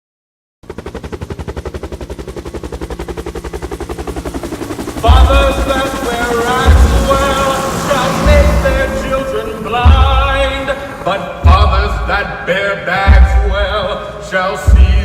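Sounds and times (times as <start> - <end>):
rapid pulsing beats: 0.7 - 15.0
sustained voice-like chord: 5.0 - 14.7
loud deep hit: 6.7 - 7.4, 9.8 - 10.6.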